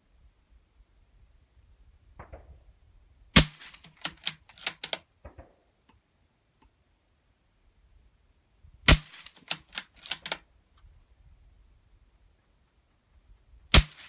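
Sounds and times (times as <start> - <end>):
suppressed rifle shots: 2.2 - 2.6, 3.4 - 5.7, 8.9 - 10.4, 13.7 - 14.0
rifle bolt clicks: 3.6 - 5.4, 9.1 - 10.4.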